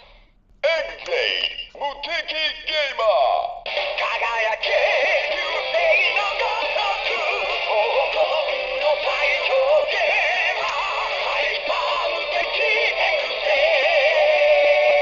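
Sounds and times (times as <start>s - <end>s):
song through small toy speaker: 3.6s - 15.0s.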